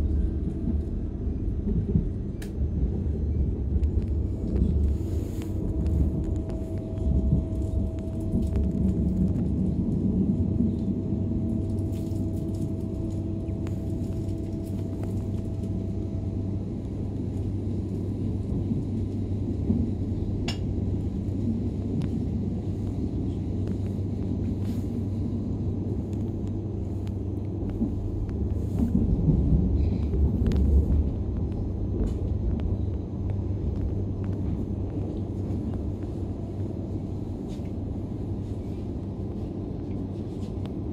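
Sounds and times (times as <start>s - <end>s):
train rumbling: 0.0s - 40.9s.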